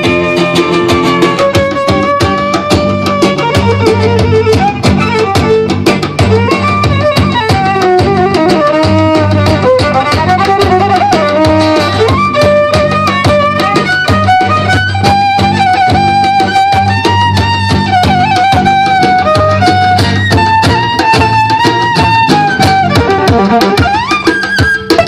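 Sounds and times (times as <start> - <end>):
quick drum beat: 0.0 - 25.0
violin melody: 0.0 - 25.0.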